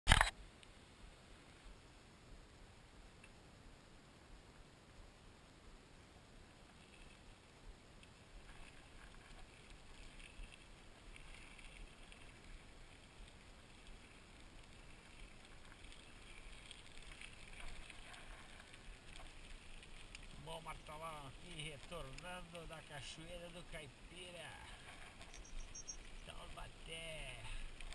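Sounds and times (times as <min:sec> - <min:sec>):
bike trail rumble: 0:08.0 - 0:27.9.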